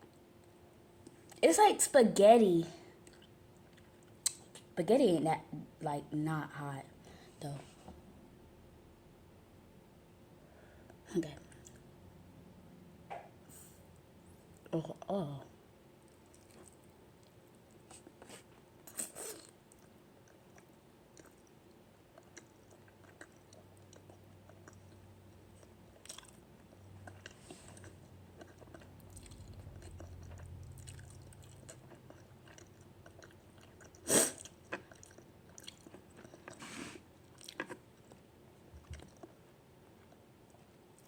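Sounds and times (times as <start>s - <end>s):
person chewing noodles: 16.1s - 41.0s
small eating clicks: 19.7s - 36.6s.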